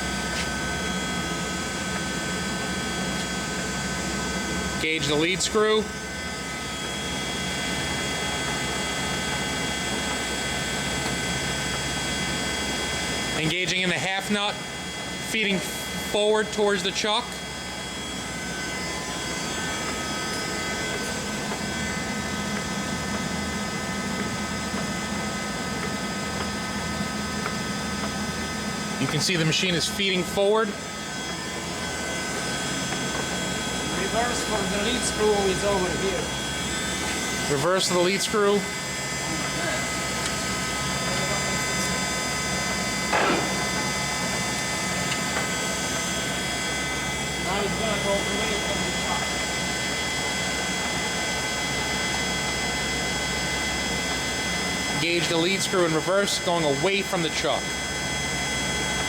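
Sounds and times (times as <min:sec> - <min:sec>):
lathe machine hum: 0:00.0 - 0:13.4, 0:14.1 - 0:59.0
high whining gear tones: 0:16.4 - 0:49.6
lathe gear clunk: 0:43.1 - 0:43.9.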